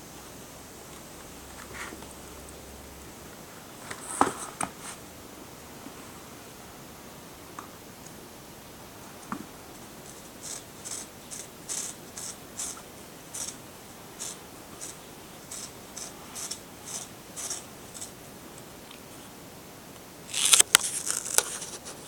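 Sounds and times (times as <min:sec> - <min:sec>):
cat scratching a scratcher: 0:10.0 - 0:18.2.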